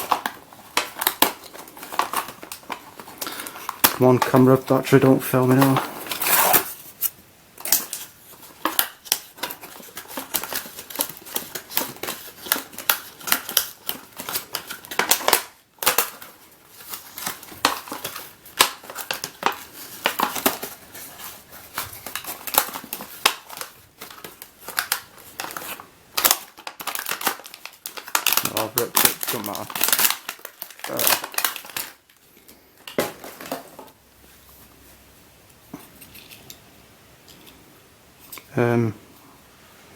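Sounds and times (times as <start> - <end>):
box packaging being pulled open: 5.5 - 7.0.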